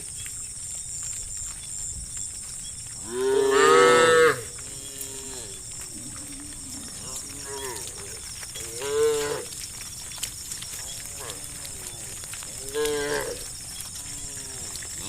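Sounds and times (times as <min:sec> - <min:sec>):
cows mooing: 0:03.0 - 0:09.8, 0:10.7 - 0:15.0.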